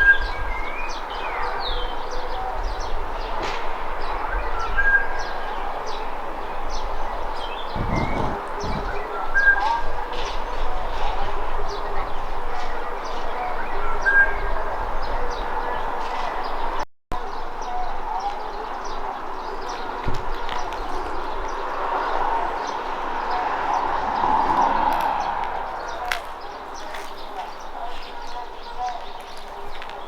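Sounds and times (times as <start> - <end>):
birds singing and chirping: 0.0 - 30.0
brief low rumble: 7.7 - 9.2.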